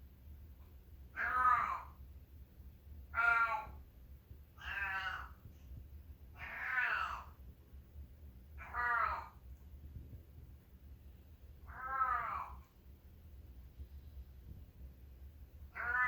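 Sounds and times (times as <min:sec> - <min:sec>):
cat meowing: 0:01.2 - 0:02.0, 0:03.1 - 0:03.8, 0:04.6 - 0:05.4, 0:06.4 - 0:07.4, 0:08.6 - 0:09.4, 0:11.7 - 0:12.6, 0:15.7 - 0:16.0.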